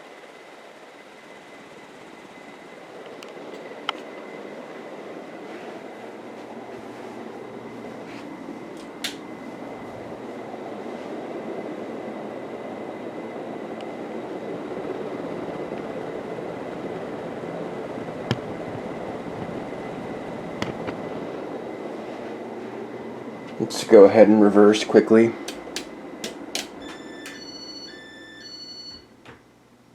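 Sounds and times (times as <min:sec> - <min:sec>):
ceiling fan air rush: 0:00.0 - 0:29.9
faint motor whine: 0:00.0 - 0:29.9
sharp click: 0:08.8 - 0:09.2, 0:25.5 - 0:27.4.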